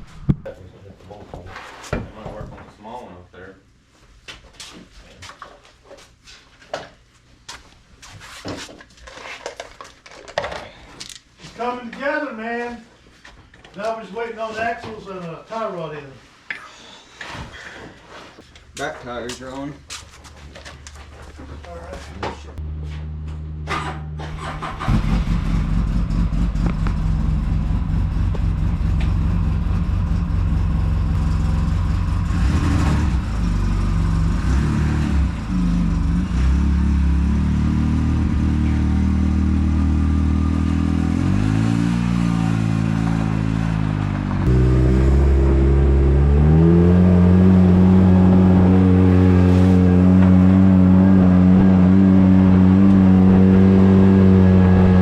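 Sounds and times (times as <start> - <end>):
off-road vehicle engine revving: 22.6 - 55.0.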